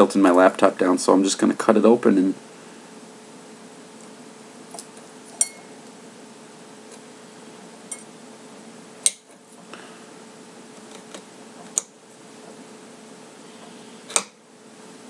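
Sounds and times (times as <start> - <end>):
faint steady hum: 0.0 - 15.0
knife clinking on hard surface: 5.4 - 5.7.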